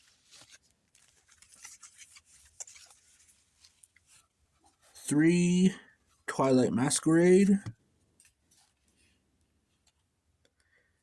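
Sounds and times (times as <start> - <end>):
packets being handled: 0.0 - 4.1.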